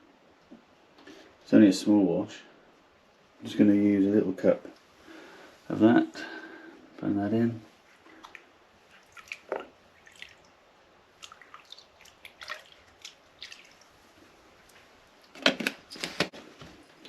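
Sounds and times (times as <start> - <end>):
water dripping and splashing in tub: 8.0 - 14.8.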